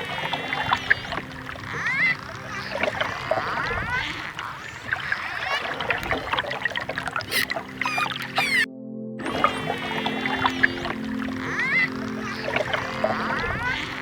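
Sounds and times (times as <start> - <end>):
echolocation clicks: 6.0 - 8.7
dolphin whistles: 7.2 - 8.7.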